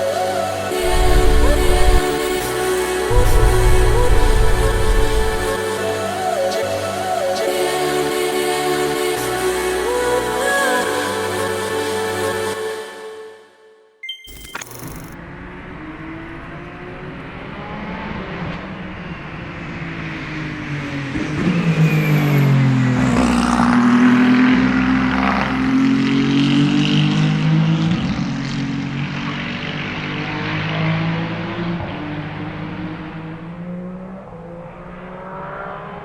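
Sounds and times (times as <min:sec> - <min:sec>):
race car engine passing: 0:15.2 - 0:36.0.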